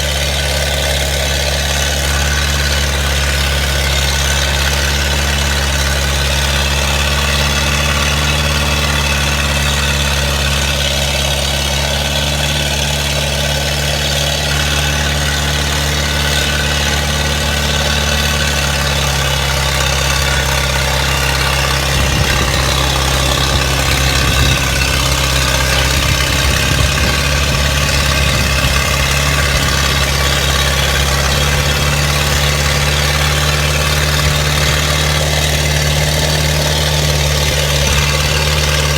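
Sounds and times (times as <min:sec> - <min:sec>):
heavy engine idling: 0:00.0 - 0:38.9
low thumping: 0:13.0 - 0:38.9.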